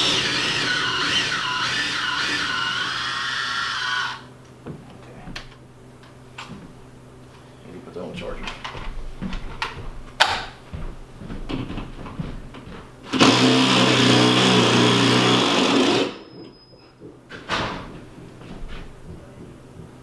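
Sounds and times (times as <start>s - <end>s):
power drill running: 0.0s - 4.3s, 13.1s - 16.2s
light knocks and clunks: 4.6s - 5.6s.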